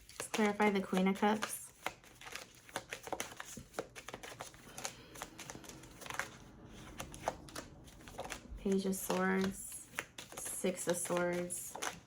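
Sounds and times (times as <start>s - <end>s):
cards being shuffled: 0.0s - 12.0s.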